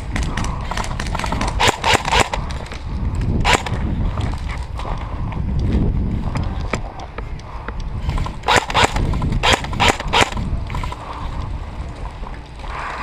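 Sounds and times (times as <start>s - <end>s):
low rumble of movement: 0.0s - 13.0s
wind on microphone: 0.0s - 13.0s
airsoft guns firing: 0.1s - 2.5s, 3.4s - 3.8s, 8.4s - 10.5s.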